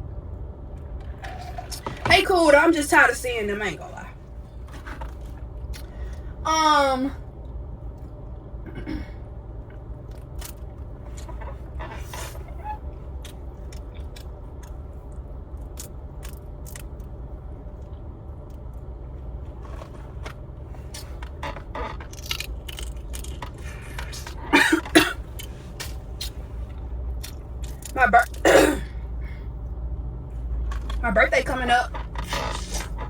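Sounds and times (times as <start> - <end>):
steady low hum: 0.0 - 33.0
objects clicking and scraping: 19.5 - 28.0, 31.9 - 33.0.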